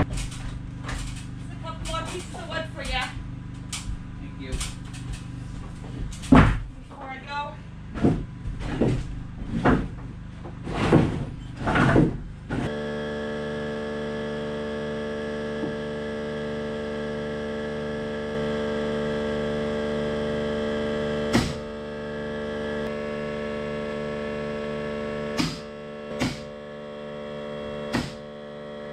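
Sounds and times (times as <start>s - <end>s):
boards scraping and rustling: 7.9s - 12.7s
held synthesizer chord: 12.7s - 28.9s.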